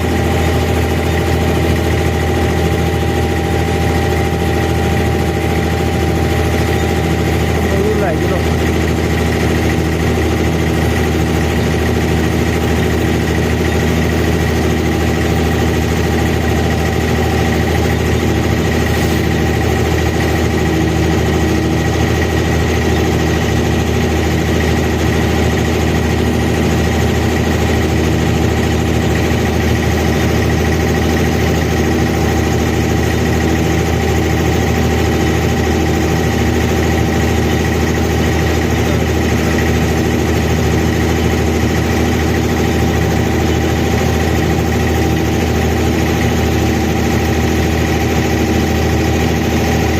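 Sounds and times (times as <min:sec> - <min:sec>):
boat diesel engine running: 0:00.0 - 0:49.9.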